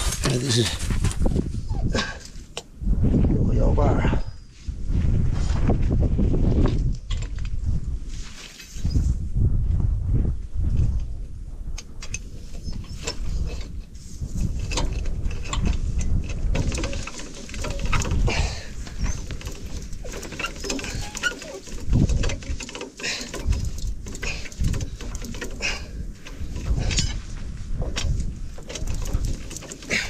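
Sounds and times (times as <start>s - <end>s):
wind rumble on microphone: 0.0s - 30.0s
metallic clicking and scraping: 11.8s - 30.0s.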